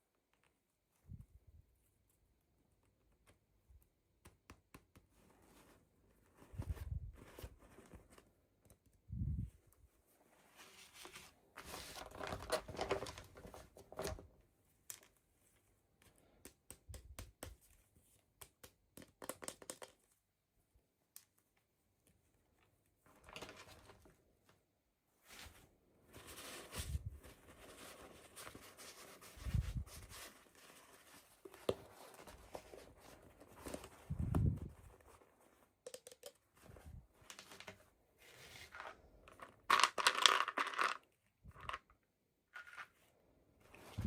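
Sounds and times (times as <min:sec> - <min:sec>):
small clicks and taps: 0:02.8 - 0:05.2, 0:16.0 - 0:17.7, 0:18.4 - 0:20.2, 0:35.8 - 0:36.5
plastic and paper crinkling: 0:10.5 - 0:14.2.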